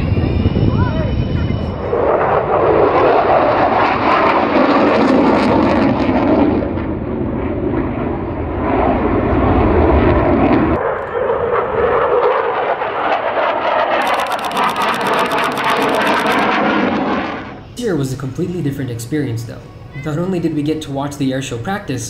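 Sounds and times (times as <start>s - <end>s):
jet aircraft engine roar: 0.0s - 22.0s.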